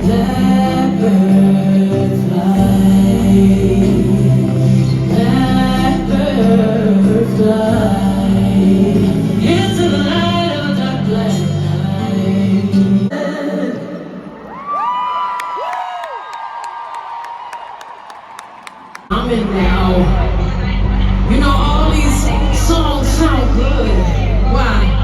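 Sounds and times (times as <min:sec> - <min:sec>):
music with singing and heavy bass: 0:00.0 - 0:13.6, 0:19.1 - 0:25.0.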